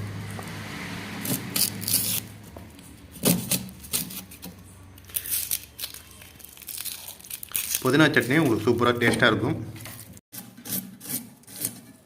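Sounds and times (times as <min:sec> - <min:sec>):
onion skins rustling and crackling: 0:01.2 - 0:10.2.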